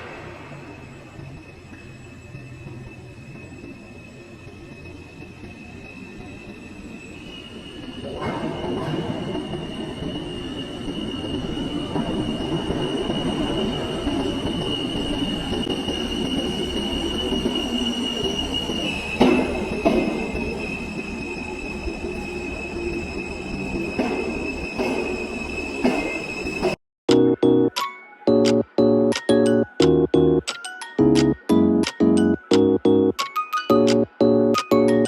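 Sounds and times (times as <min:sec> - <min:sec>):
subway train rumbling: 0:00.0 - 0:26.8, 0:31.0 - 0:35.0
wheels squealing on rail: 0:00.0 - 0:26.8.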